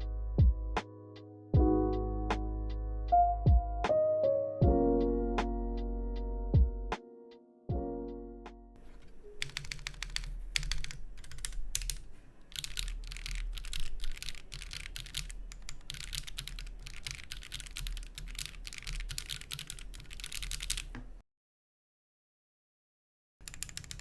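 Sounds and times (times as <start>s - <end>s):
mechanical keyboard typing: 9.0s - 21.0s, 23.4s - 24.0s.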